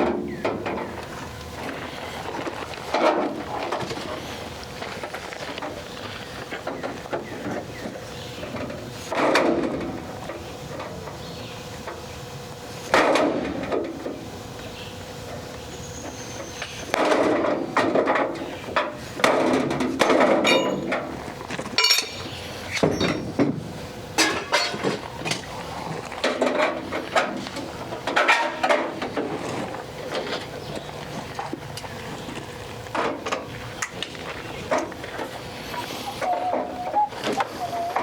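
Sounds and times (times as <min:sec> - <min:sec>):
metal knocks and clinks: 0:20.4 - 0:21.0, 0:21.8 - 0:23.2.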